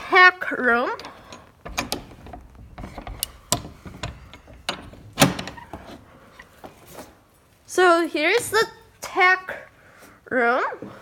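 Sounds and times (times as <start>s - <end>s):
door clicking and rattling: 0.9s - 6.0s.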